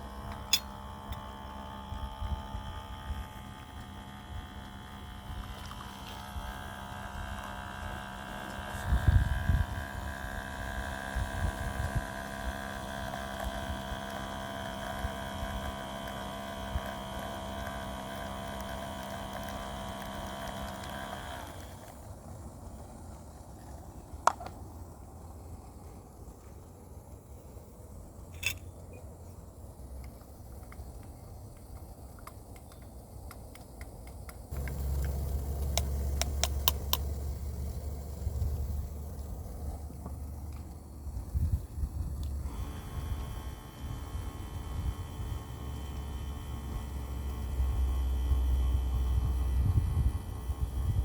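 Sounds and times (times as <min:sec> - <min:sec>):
milk frother whining: 0:00.0 - 0:23.3, 0:34.5 - 0:51.0
sharp clicks: 0:30.0 - 0:40.8.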